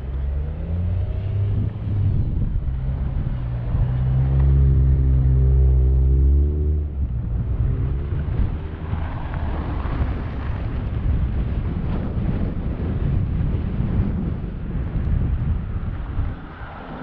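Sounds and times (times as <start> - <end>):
vehicle engine hum: 0.0 - 17.0
wind buffeting microphone: 0.0 - 17.0.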